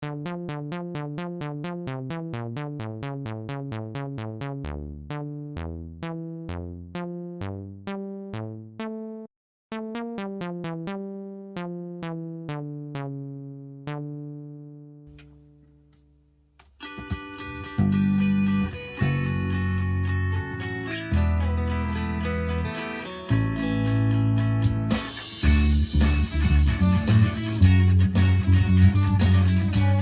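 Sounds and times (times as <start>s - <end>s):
synthesizer plucked melody: 0.0s - 15.2s, 16.8s - 30.0s.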